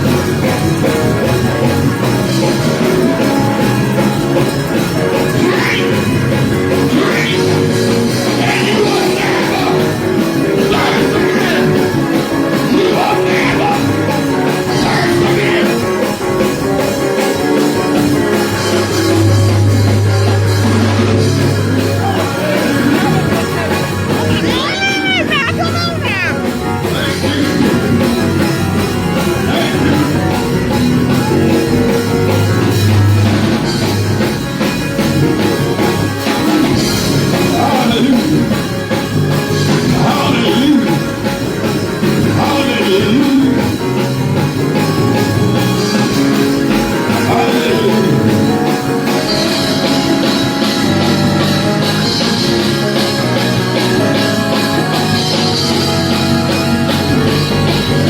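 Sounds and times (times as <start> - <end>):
loud rock band music: 0.0 - 58.0
person singing: 22.0 - 28.2, 39.8 - 41.1, 46.8 - 50.8.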